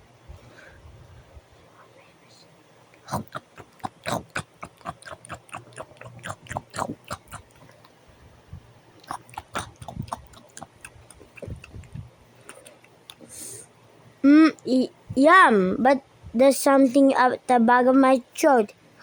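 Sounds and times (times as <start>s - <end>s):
chewing and mouth-smacking: 3.0s - 8.0s, 9.0s - 13.2s.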